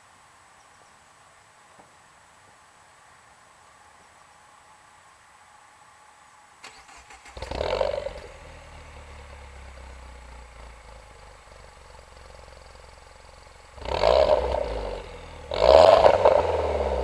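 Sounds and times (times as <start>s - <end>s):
car engine revving and idling: 6.9s - 17.0s.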